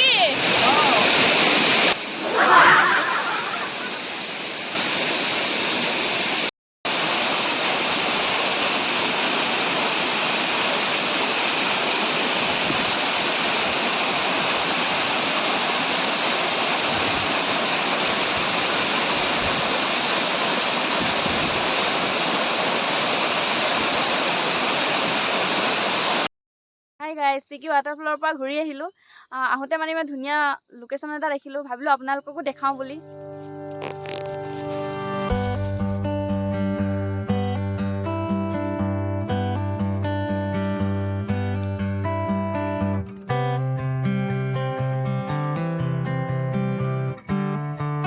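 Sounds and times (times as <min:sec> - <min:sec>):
waterfall rushing: 0:00.2 - 0:26.3.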